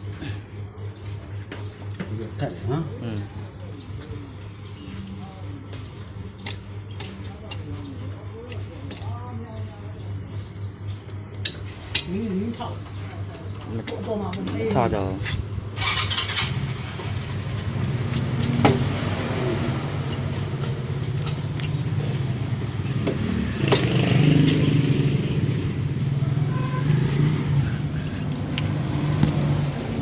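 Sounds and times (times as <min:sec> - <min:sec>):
small motorcycle engine running: 0:15.6 - 0:30.0.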